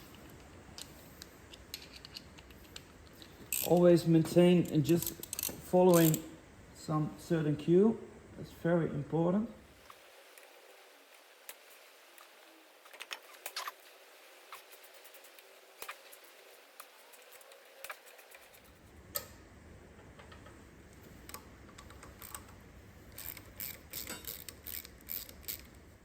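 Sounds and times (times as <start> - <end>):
ratchet clicking: 3.5 - 3.9, 4.6 - 6.2, 21.3 - 22.5, 23.1 - 25.8
metallic clicks of hand tools: 4.6 - 6.2, 23.2 - 25.8.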